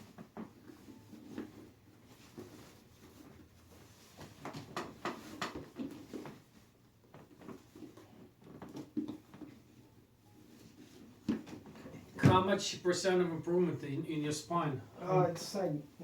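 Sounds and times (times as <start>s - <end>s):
clothing rustling: 0.0s - 12.3s.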